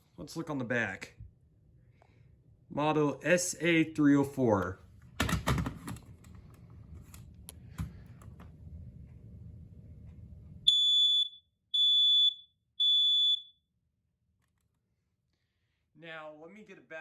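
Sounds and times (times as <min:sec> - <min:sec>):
high-pitched smoke alarm beeps: 0:10.7 - 0:13.6.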